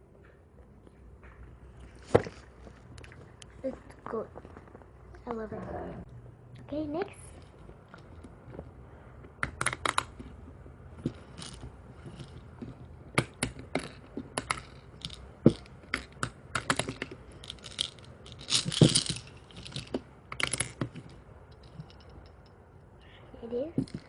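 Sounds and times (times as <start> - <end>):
plastic clicks and clatters: 11.0 - 22.1
rattling: 11.0 - 22.6.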